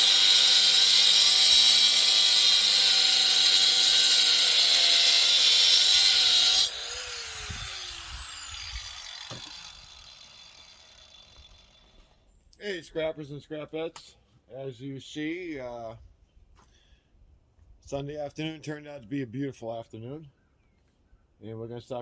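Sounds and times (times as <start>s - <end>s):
power tool motor spinning down: 0.0s - 12.0s.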